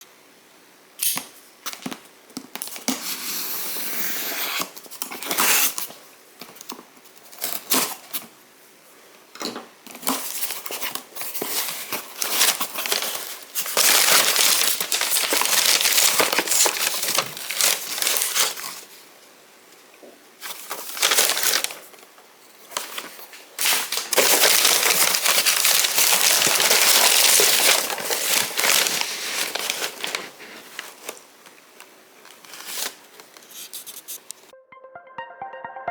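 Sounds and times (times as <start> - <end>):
packaging crinkling and tearing: 9.9 - 18.9, 20.4 - 22.1, 22.7 - 34.3.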